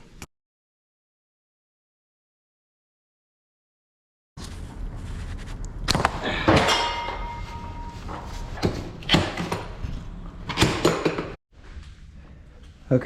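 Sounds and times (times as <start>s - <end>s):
short metallic ring: 6.5s - 8.6s.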